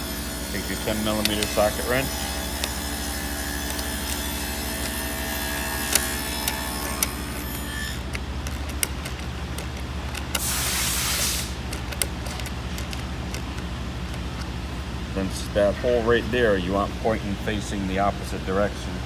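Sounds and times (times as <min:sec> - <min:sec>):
socket wrench ratcheting: 0:00.6 - 0:14.6.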